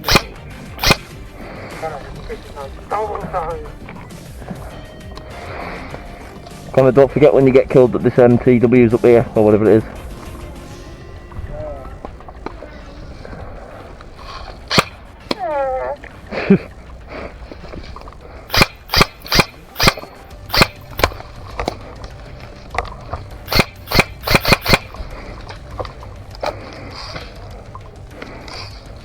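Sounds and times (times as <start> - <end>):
airsoft gun pops: 0.0 - 2.3, 18.5 - 26.7.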